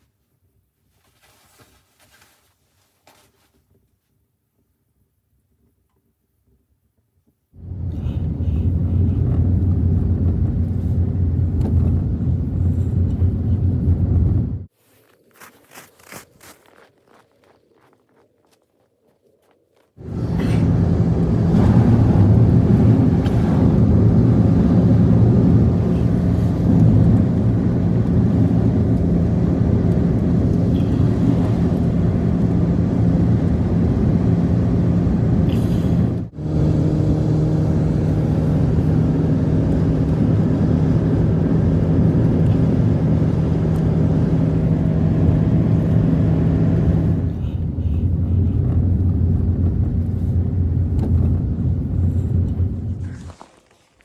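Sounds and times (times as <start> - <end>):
vehicle engine droning hum: 7.6 - 14.7, 20.0 - 53.5.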